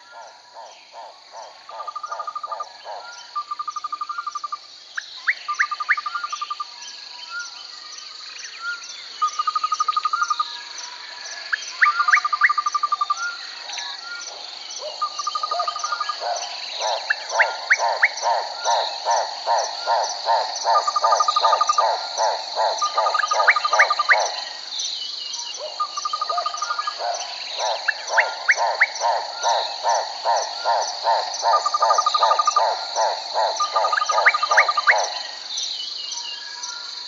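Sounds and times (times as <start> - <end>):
low rhythmic calls: 0.0 - 4.6, 14.3 - 24.7, 25.5 - 35.5
high insect drone: 0.0 - 37.0.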